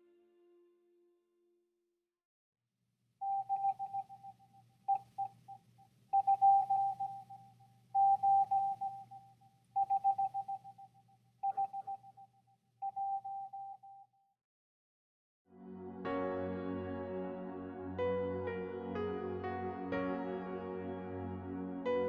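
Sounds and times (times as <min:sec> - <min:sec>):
morse code beeps: 0:03.2 - 0:05.5, 0:06.2 - 0:14.0
faint low hum: 0:03.2 - 0:13.8.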